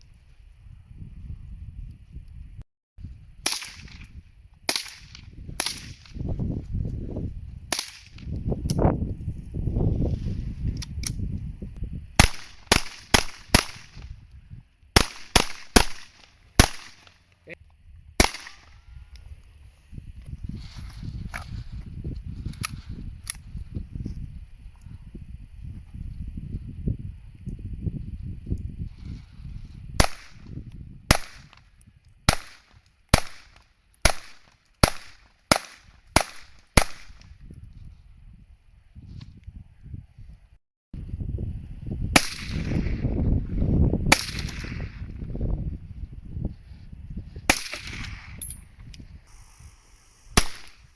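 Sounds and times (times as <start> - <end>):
pistol shots: 12.2 - 14.0, 15.0 - 17.2, 18.2 - 18.7, 32.3 - 37.2, 47.5 - 48.5, 50.4 - 50.8.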